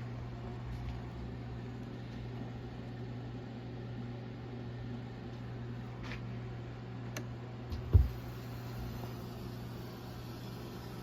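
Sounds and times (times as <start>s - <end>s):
turntable motor hum: 0.0s - 11.0s
steady hiss: 7.9s - 11.0s.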